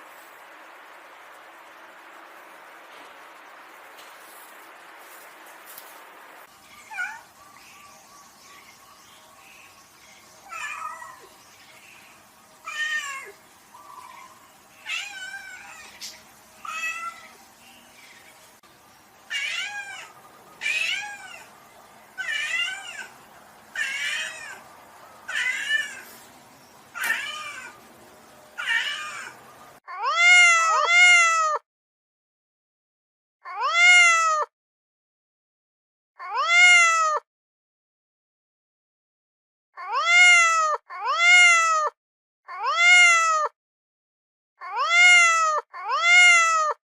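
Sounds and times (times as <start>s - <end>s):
cat meowing: 10.5s - 11.3s, 12.6s - 13.4s, 14.1s - 16.0s, 16.6s - 17.4s, 19.3s - 21.5s, 22.2s - 23.1s, 23.8s - 24.6s, 25.3s - 26.0s, 27.0s - 27.8s, 28.6s - 31.6s, 33.5s - 34.5s, 36.2s - 37.2s, 39.8s - 41.9s, 42.5s - 43.5s, 44.6s - 46.8s.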